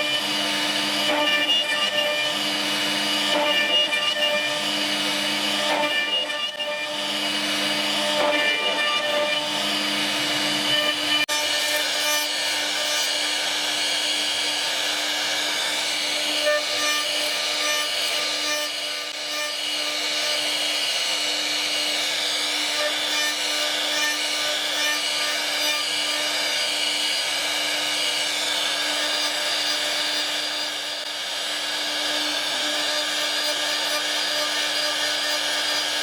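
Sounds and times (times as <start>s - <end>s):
router bit rasping through wood: 0.0s - 36.0s
router spindle whine: 0.0s - 36.0s.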